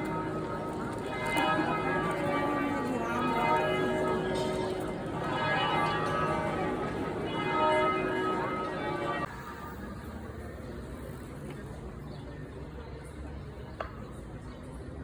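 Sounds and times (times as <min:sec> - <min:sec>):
church bells ringing: 0:00.0 - 0:10.7.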